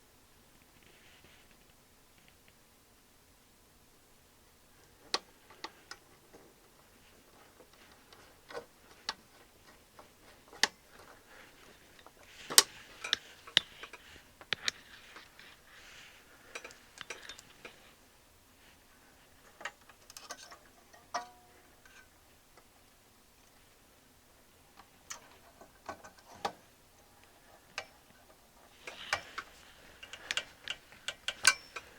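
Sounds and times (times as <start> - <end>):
tools clicking and clinking on metal: 16.5 - 17.8, 19.5 - 22.1, 28.8 - 31.9.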